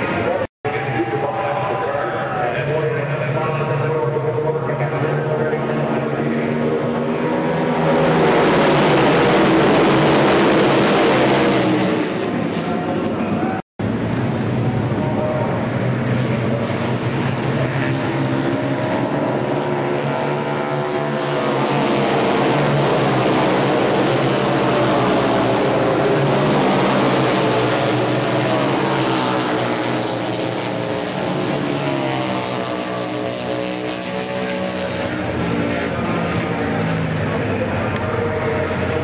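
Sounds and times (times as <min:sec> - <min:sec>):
racing motorcycles at speed: 0:00.0 - 0:39.0.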